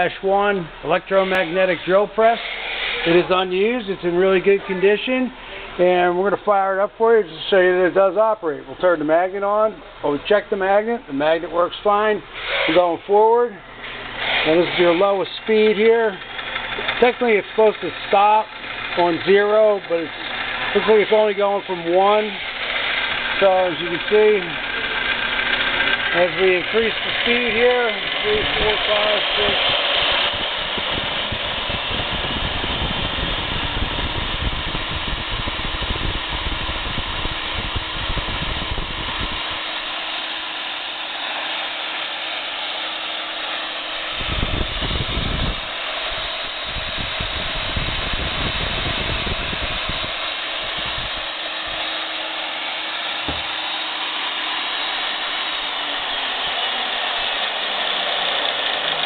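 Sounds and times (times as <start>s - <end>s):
drill press motor whir: 0.0s - 5.8s, 11.3s - 59.0s.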